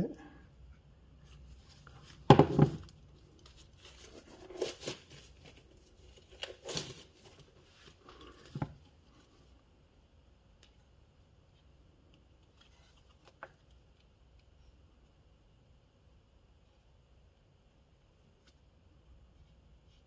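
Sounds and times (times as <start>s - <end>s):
rustling scrapes: 1.2s - 9.5s.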